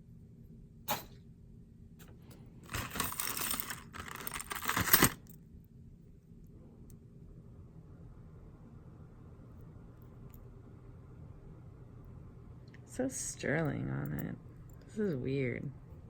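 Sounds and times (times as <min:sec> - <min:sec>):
metal jewelry clinking and jangling: 0:02.6 - 0:05.4.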